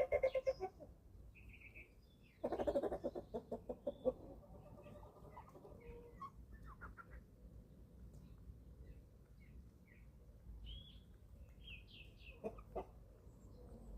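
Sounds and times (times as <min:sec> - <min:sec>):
chickens clucking rapidly: 0:00.0 - 0:01.0, 0:02.4 - 0:07.4, 0:12.2 - 0:13.0
chicks peeping: 0:01.7 - 0:07.4, 0:10.7 - 0:13.0.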